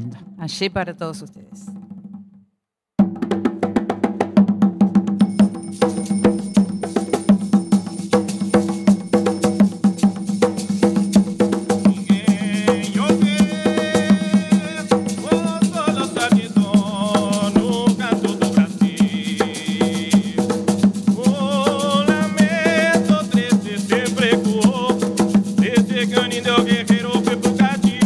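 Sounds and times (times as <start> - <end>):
drums: 3.0 - 28.0
shaken rattles: 5.2 - 28.0
voices singing with vibrato: 12.0 - 28.0.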